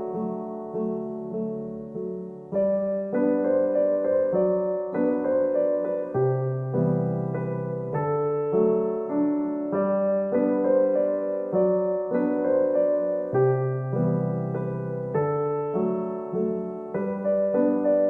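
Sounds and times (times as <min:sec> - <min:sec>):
gentle piano music: 0:00.0 - 0:18.0.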